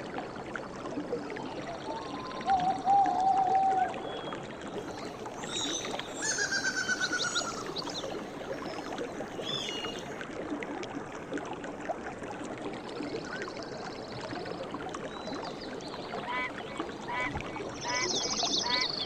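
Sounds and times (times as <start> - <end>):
stream flowing: 0.0 - 19.0
birds calling: 5.4 - 8.1, 16.2 - 19.0.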